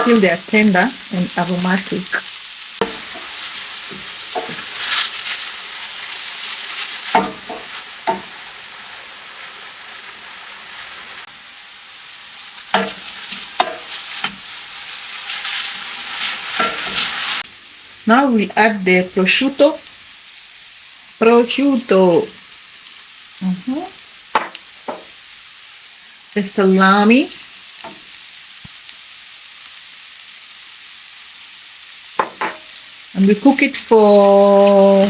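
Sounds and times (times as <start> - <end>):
vegetables sizzling in frying pan: 0.0 - 35.0
utensil scraping pan: 2.8 - 8.4, 12.7 - 17.4.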